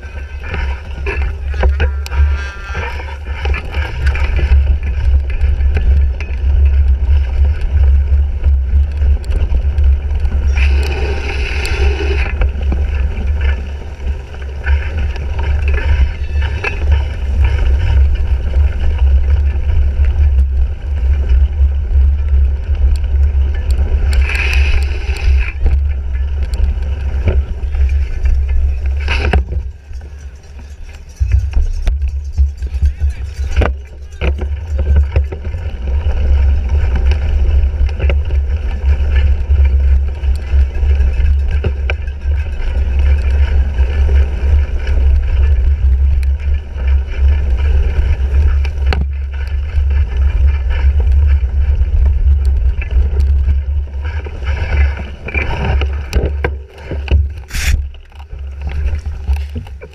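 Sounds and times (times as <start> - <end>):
wind rumble and rattling: 0.0 - 59.9
hissing noise: 57.4 - 57.8.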